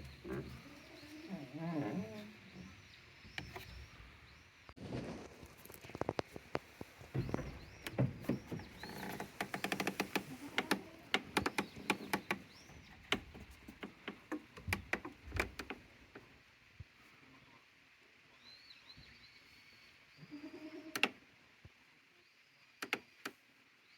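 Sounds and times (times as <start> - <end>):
goats moving about: 4.8 - 15.9
sharp clicks and knocks: 5.9 - 15.8.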